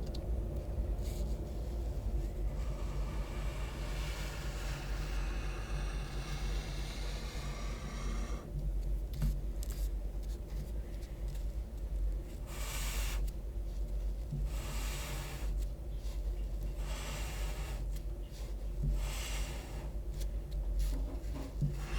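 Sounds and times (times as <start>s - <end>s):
highlighter dragged across paper: 2.4s - 8.5s.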